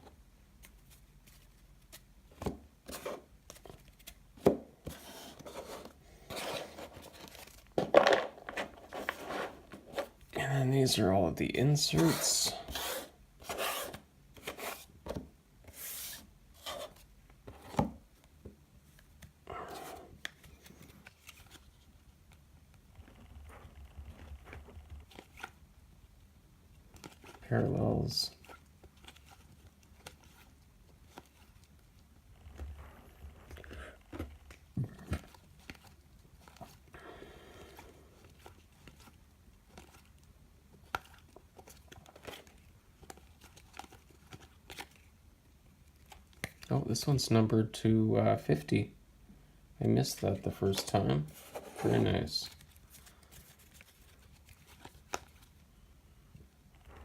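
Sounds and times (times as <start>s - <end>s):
cards sliding and rustling: 0.6s - 10.2s, 11.8s - 18.0s, 18.8s - 22.4s, 24.4s - 25.6s, 26.9s - 31.8s, 37.7s - 45.2s, 49.8s - 55.6s.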